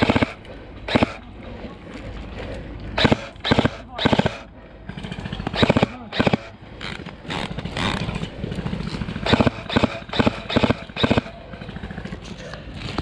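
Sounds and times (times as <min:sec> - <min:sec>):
airsoft guns firing bursts: 0:00.0 - 0:01.2, 0:03.0 - 0:08.0, 0:08.7 - 0:12.0
steady low buzz: 0:00.0 - 0:12.4.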